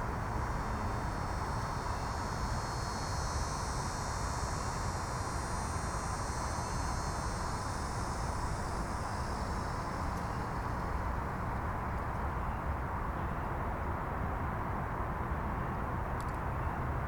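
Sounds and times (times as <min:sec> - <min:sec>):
high insect buzz: 0:00.0 - 0:11.7
distant road traffic rumble: 0:00.0 - 0:17.0.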